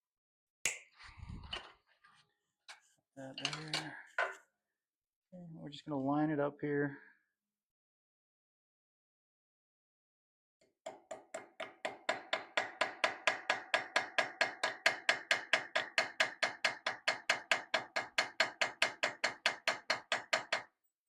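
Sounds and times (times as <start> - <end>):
small hammer tapping metal: 3.4 - 4.4, 10.8 - 20.7.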